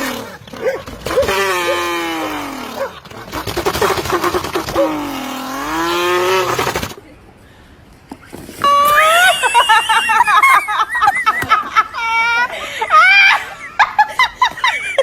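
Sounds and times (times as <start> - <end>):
drawn-out wailing cry: 0.0 - 6.6.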